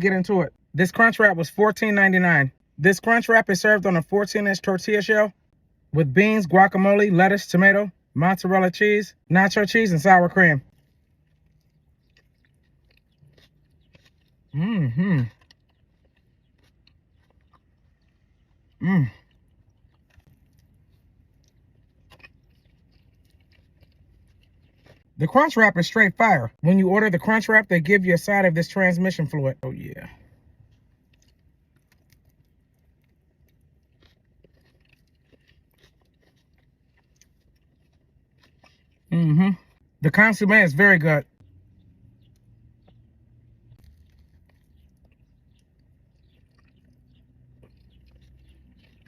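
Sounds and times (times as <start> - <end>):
man chewing crunchy food: 9.2 - 26.6, 29.9 - 49.0
man humming mm-mm: 14.6 - 15.3, 18.8 - 19.2, 39.1 - 39.6.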